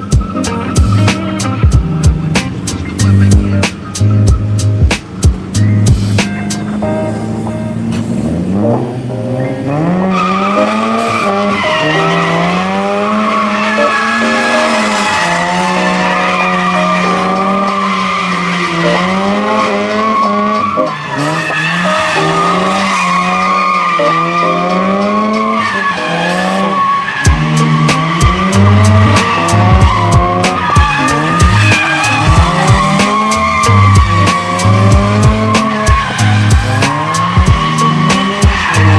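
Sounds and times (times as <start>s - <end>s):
rotary engine revving: 0.0s - 6.8s, 7.7s - 38.9s
tyres squealing: 0.0s - 6.8s, 9.7s - 38.9s
sharp thumps: 27.3s - 38.9s.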